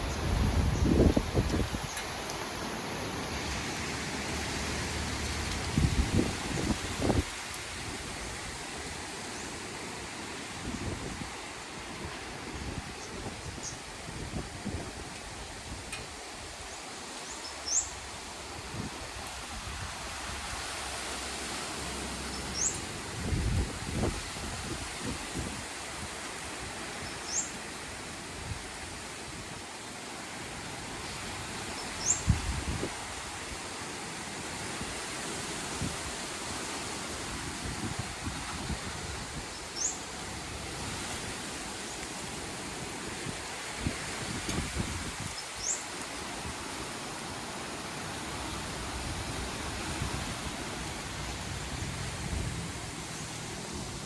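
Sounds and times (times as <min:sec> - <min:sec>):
wind buffeting microphone: 0:00.0 - 0:02.3, 0:03.3 - 0:09.0, 0:22.6 - 0:26.1, 0:37.1 - 0:46.8, 0:48.3 - 0:54.0
strong wind blowing: 0:00.0 - 0:09.1, 0:23.0 - 0:26.2, 0:35.6 - 0:39.5, 0:40.1 - 0:45.4, 0:48.0 - 0:54.0.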